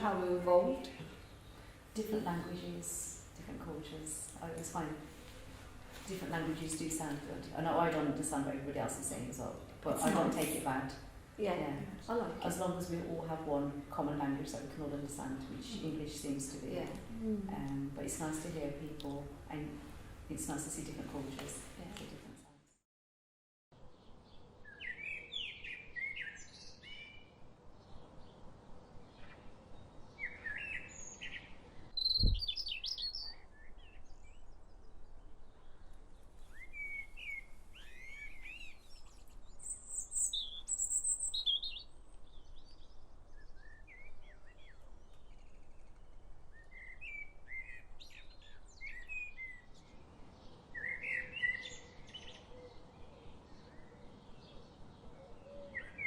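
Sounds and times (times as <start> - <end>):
songbirds chirping and singing: 23.8 - 56.0.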